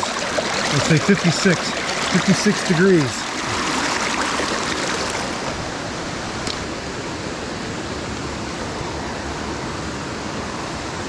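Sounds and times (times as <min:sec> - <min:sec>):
stream rushing over rocks: 0:00.0 - 0:08.5.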